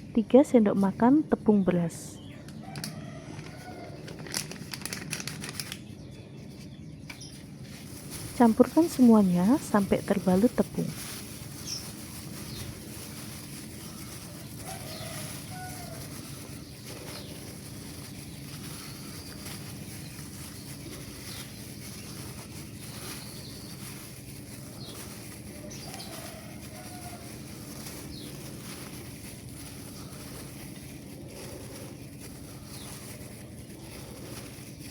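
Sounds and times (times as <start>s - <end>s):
steady background noise: 0.0s - 34.9s.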